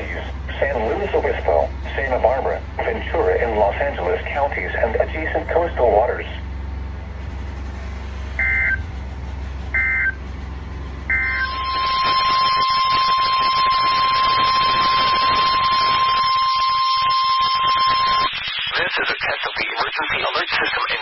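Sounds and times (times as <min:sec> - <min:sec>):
loud radio static: 0:00.0 - 0:06.4, 0:18.1 - 0:21.0
steady warning alarm tone: 0:00.0 - 0:06.4, 0:08.3 - 0:08.9, 0:09.7 - 0:10.2, 0:11.1 - 0:18.3
short data bursts: 0:08.4 - 0:08.8.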